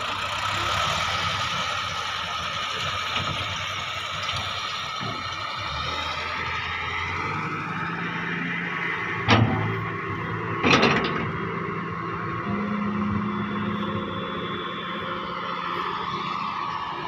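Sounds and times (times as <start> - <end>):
excavator engine running: 0.0 - 17.0
hydraulic whine: 4.8 - 17.0.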